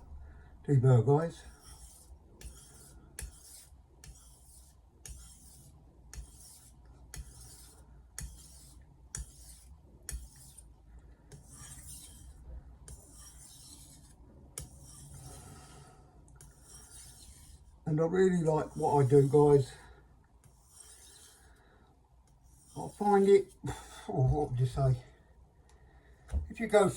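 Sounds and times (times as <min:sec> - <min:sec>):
knife scraping on whetstone: 0:01.4 - 0:10.7, 0:11.3 - 0:15.7, 0:16.4 - 0:17.7, 0:20.4 - 0:21.6, 0:22.4 - 0:23.6.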